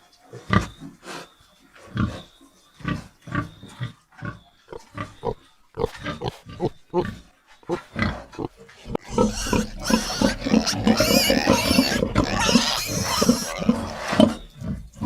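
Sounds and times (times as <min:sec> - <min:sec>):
rapid animal grunts: 0:04.7 - 0:15.0
harsh rasping noise: 0:08.4 - 0:14.2.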